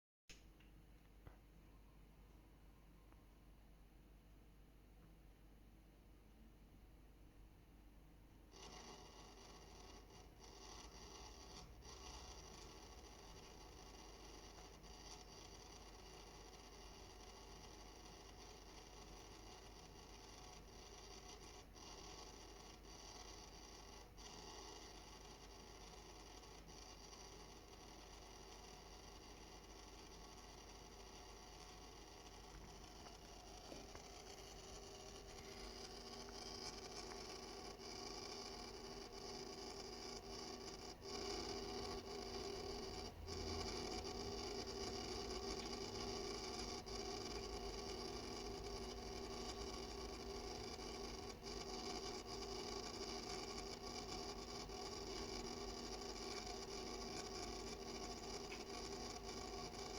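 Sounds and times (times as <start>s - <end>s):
water-cooling pump humming and whining: 32.1s - 59.9s
faint ticks: 40.6s - 59.9s.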